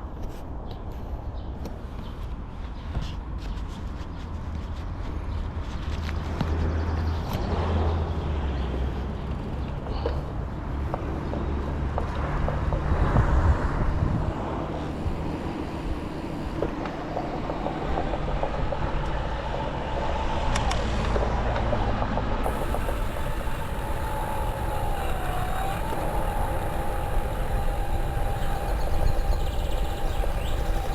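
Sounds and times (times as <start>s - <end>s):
bike road rumble: 0.0s - 30.9s
sharp rattling clicks: 22.4s - 30.9s.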